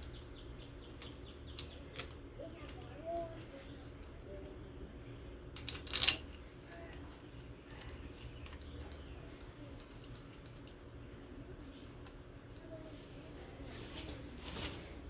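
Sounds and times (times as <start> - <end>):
metal tools clinking: 5.6 - 10.8.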